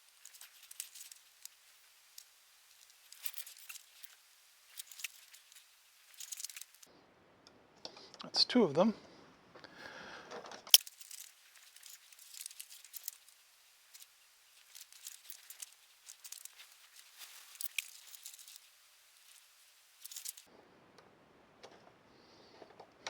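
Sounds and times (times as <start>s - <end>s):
solder crackling and sizzling: 0.0s - 6.9s, 10.7s - 20.5s.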